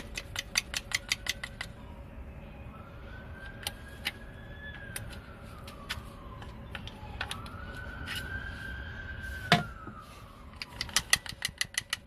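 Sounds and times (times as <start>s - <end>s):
hand work clicks and taps: 0.0s - 1.8s, 10.5s - 12.0s
emergency siren wailing: 1.1s - 11.2s.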